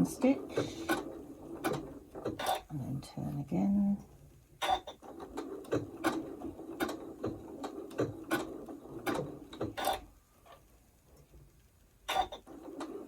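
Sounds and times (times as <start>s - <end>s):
sewing machine stitching: 0.0s - 2.7s, 4.6s - 10.1s, 12.1s - 13.0s.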